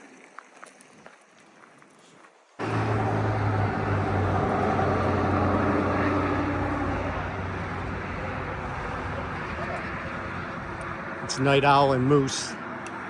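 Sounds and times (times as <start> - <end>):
road noise: 2.6 - 13.0
vehicle engine running: 2.6 - 13.0.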